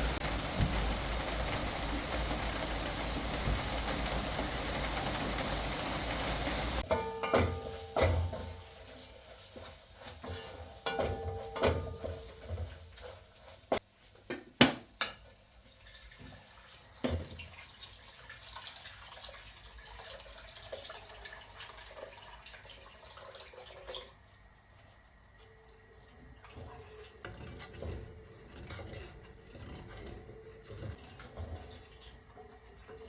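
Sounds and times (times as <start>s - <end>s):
dishes and utensils clinking: 6.8s - 8.8s, 10.0s - 12.8s.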